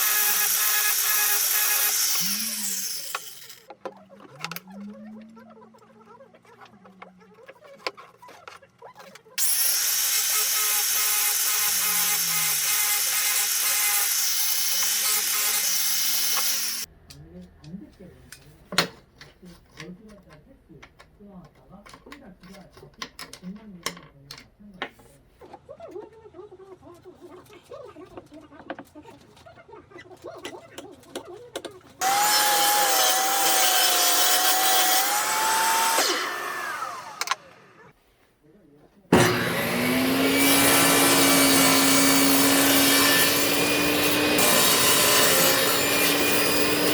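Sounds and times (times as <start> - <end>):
power tool running: 0.0 - 3.6, 9.4 - 16.9, 32.0 - 37.8, 39.1 - 46.9.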